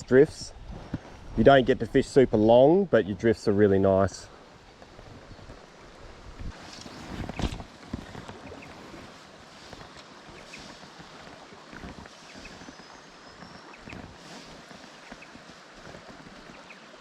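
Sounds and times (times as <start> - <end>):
river water flowing: 0.0 - 17.0
wind thumps on microphone: 5.0 - 9.0.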